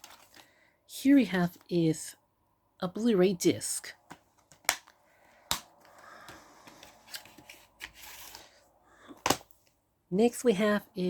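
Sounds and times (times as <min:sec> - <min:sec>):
plastic rustling and scraping: 0:00.0 - 0:00.5, 0:06.6 - 0:09.4.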